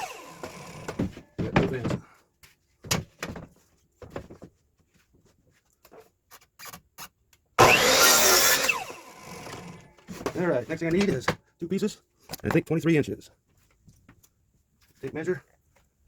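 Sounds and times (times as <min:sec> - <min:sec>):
electric saw cutting wood: 0:00.0 - 0:01.0, 0:07.6 - 0:10.0.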